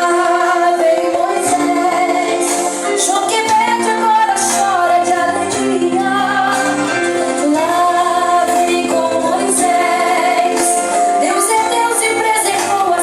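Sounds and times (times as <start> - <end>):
sustained instrumental backing: 0.0 - 13.0.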